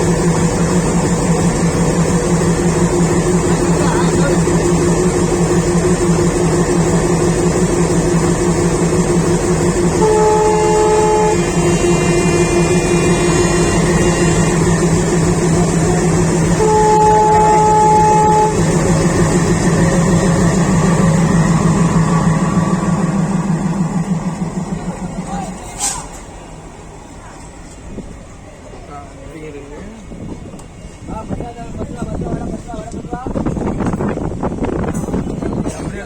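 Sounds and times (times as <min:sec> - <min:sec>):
locomotive engine humming: 0:00.0 - 0:36.0
locomotive air horn blasts: 0:09.8 - 0:19.0.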